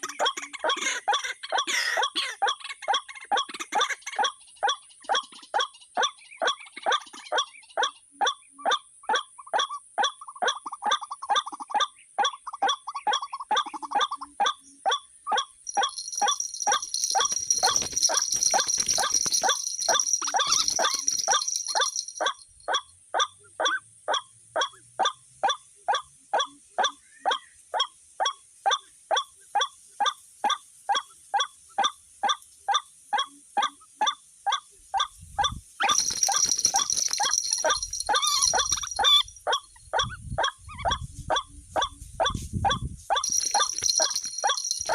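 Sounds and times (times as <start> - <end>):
waterhen calling: 0.0 - 5.7, 15.3 - 23.3, 35.0 - 41.9, 43.1 - 44.9.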